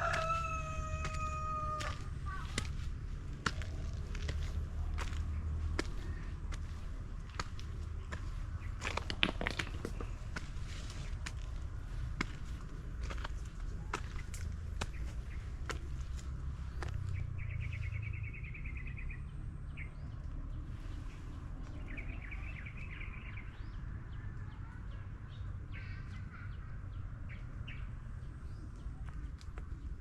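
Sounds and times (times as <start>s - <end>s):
steady low rumble: 0.0s - 20.1s
birds trilling and chirping: 0.0s - 24.8s.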